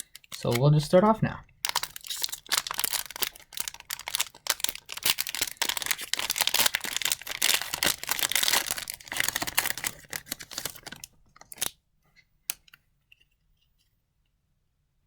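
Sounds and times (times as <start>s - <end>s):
foil wrapper crinkling and tearing: 0.0s - 0.9s, 1.6s - 11.7s.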